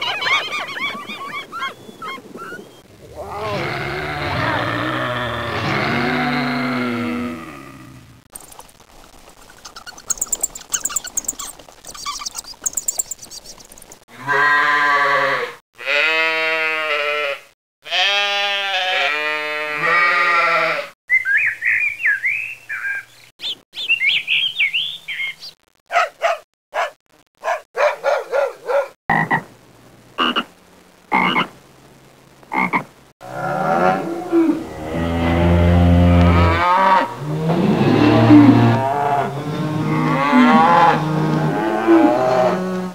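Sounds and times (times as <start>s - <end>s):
long pitched animal calls: 0.8s - 20.8s
high chirping: 8.3s - 14.0s, 21.1s - 25.6s.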